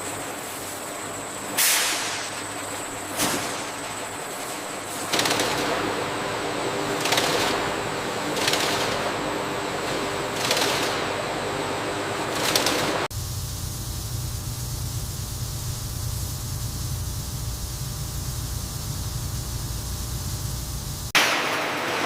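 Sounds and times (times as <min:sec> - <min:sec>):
steady low hum: 0:00.0 - 0:21.2
factory machinery hissing: 0:00.0 - 0:22.0
machine clacking: 0:05.0 - 0:05.8, 0:07.0 - 0:09.2, 0:10.0 - 0:11.1.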